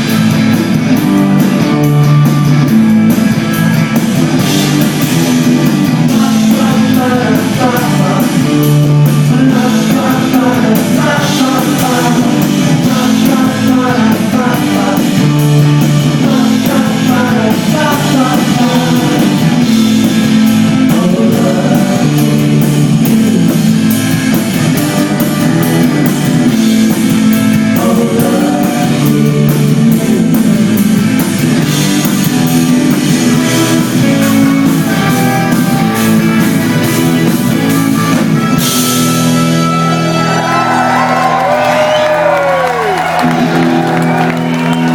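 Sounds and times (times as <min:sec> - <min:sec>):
bass guitar: 0:00.0 - 0:44.9
drum kit: 0:00.0 - 0:44.9
electric guitars: 0:00.0 - 0:44.9
person singing: 0:06.0 - 0:23.6, 0:27.6 - 0:31.0, 0:33.1 - 0:38.6.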